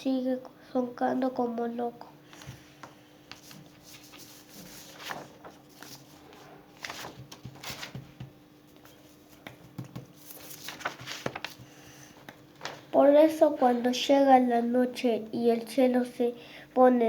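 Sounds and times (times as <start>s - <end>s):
faint steady hum: 0.0s - 17.0s
soft handling rustling: 2.3s - 13.0s.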